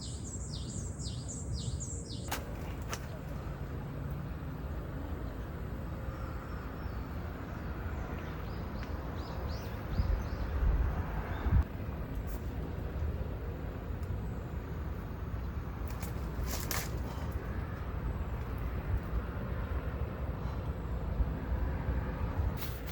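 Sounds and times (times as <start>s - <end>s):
bird chirps: 0.0s - 3.4s.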